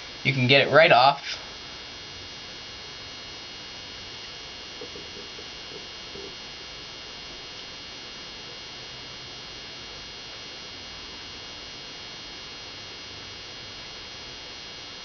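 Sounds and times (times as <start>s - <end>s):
high-pitched electrical whine: 0.0s - 15.0s
steady background hiss: 0.0s - 15.0s.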